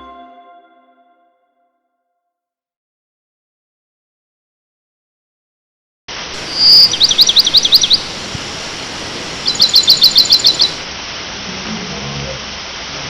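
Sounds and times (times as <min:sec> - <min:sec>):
rushing water: 0:06.1 - 0:13.0
small bird singing: 0:06.4 - 0:08.2, 0:09.1 - 0:10.8.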